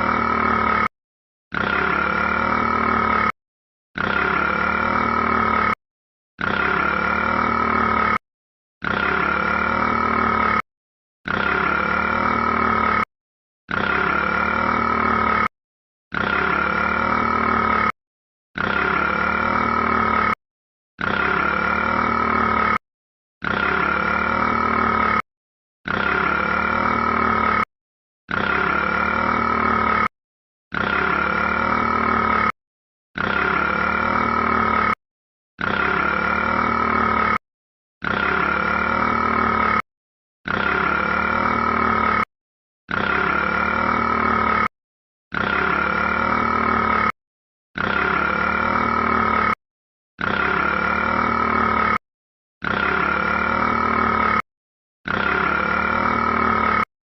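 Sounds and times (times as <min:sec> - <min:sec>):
rat burping: 0:01.5 - 0:03.4, 0:04.0 - 0:05.8, 0:06.4 - 0:08.2, 0:08.8 - 0:10.6, 0:13.7 - 0:15.5, 0:16.1 - 0:18.0, 0:18.6 - 0:20.4, 0:21.0 - 0:22.8, 0:30.7 - 0:32.6, 0:33.2 - 0:35.0, 0:35.6 - 0:37.4, 0:42.9 - 0:44.7, 0:45.3 - 0:47.2, 0:47.8 - 0:49.6, 0:50.2 - 0:52.0.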